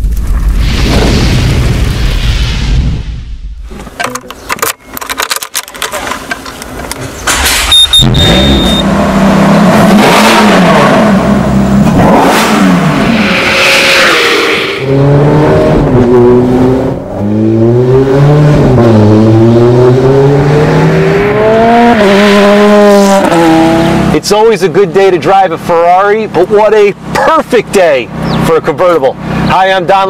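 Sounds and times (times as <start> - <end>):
car engine accelerating hard: 7.4 - 27.4.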